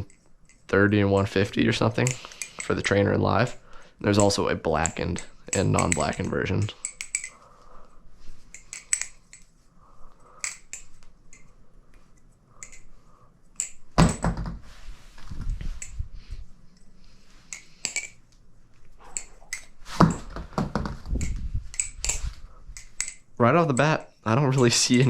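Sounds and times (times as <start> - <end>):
butterfly knife clicking: 4.2 - 7.4, 8.5 - 9.4, 10.4 - 11.5, 12.6 - 12.9, 21.2 - 23.2.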